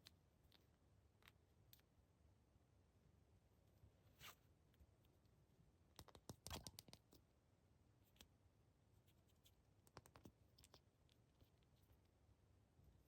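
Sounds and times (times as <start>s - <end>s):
small objects clicking and tapping: 5.9s - 7.2s, 9.8s - 10.8s.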